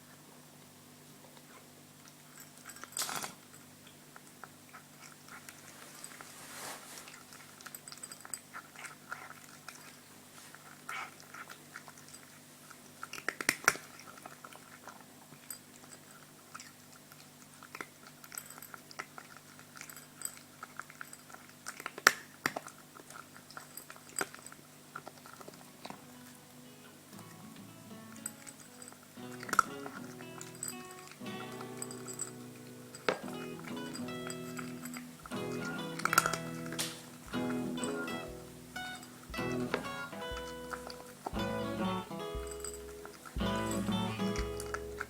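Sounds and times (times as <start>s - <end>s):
cat chewing and crunching: 0.0s - 45.0s
teeth clicking: 10.7s - 26.1s, 27.2s - 45.0s.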